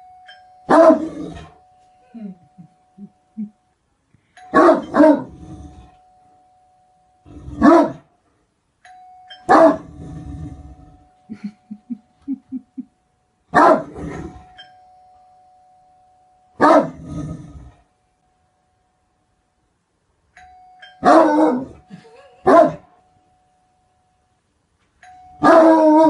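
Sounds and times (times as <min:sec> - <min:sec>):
steady ringing tone: 0:00.0 - 0:07.6, 0:08.8 - 0:13.5, 0:14.3 - 0:25.8
dog barking deeply: 0:07.6 - 0:08.0, 0:13.6 - 0:14.1, 0:16.6 - 0:17.0, 0:22.5 - 0:22.8.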